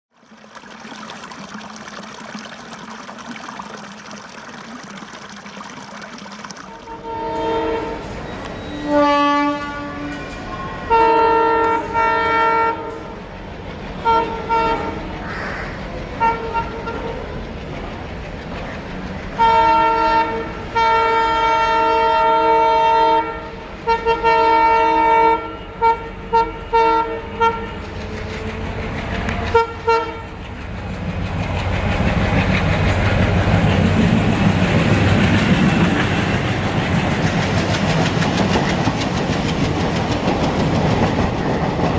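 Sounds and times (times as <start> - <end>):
locomotive horn: 6.7 - 13.2, 14.0 - 15.1, 16.2 - 17.2, 19.4 - 28.2, 29.5 - 30.4
train passing rumble: 7.0 - 41.9.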